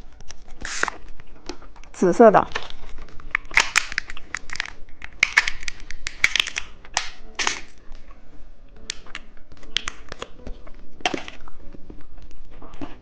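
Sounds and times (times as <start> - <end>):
chewing gummy candy: 11.0 - 13.0.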